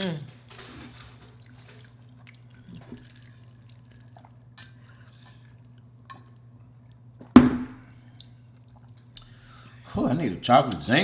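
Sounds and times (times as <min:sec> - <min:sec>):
wet chewing and lip-smacking: 0:01.0 - 0:07.1, 0:08.0 - 0:09.4.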